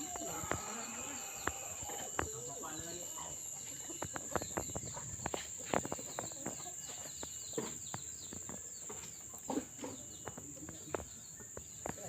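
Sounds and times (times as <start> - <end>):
high-pitched insect drone: 0.0 - 8.4
birds chirping: 0.0 - 12.0.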